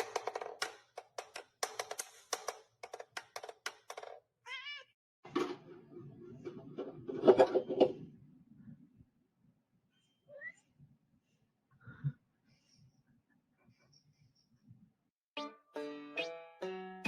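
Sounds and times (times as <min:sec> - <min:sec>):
cat meowing: 0:04.5 - 0:04.9.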